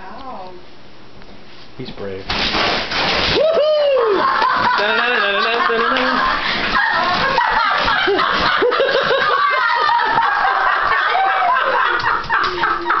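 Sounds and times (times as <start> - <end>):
people laughing: 3.8 - 13.0.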